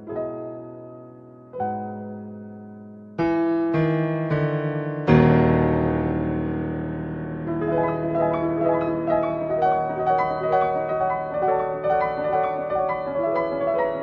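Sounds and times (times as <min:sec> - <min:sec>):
slow solo piano music: 0:00.0 - 0:14.0.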